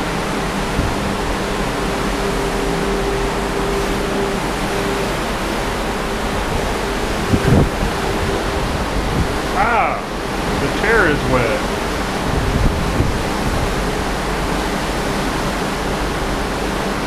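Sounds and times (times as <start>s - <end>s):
faint steady tone: 0.0s - 9.4s
sea: 0.0s - 17.0s
strong wind buffeting microphone: 0.0s - 17.0s.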